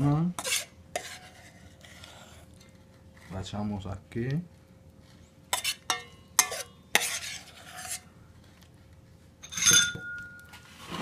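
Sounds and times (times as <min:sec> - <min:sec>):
utensil scraping a bowl: 0:00.4 - 0:03.5, 0:04.4 - 0:08.8
metal clinking on a dish: 0:05.9 - 0:07.1, 0:09.4 - 0:10.5.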